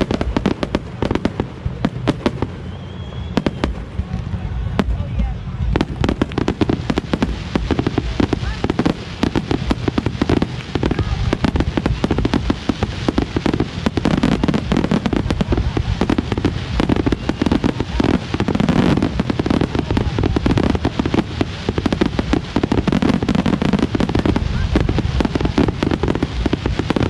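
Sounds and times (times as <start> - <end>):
fireworks bangs and crackles: 0.0 - 27.0.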